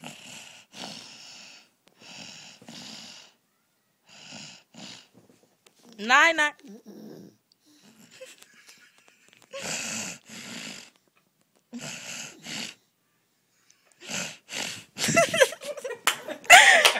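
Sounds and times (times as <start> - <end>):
snoring: 0.0 - 3.4, 4.1 - 5.1, 6.7 - 8.3, 9.6 - 11.0, 11.7 - 12.9, 13.9 - 15.1.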